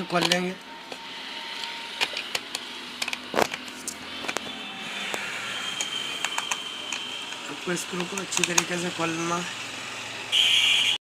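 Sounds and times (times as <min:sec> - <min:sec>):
screwdriver clicking: 0:01.6 - 0:04.5, 0:05.8 - 0:08.9.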